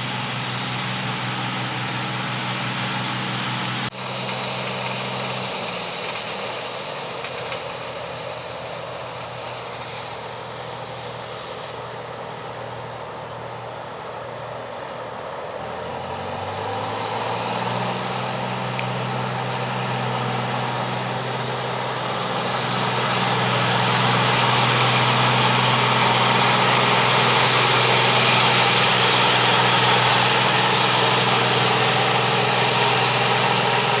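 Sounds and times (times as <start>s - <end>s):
combine harvester engine: 0.0s - 34.0s
rushing machine noise: 16.8s - 34.0s.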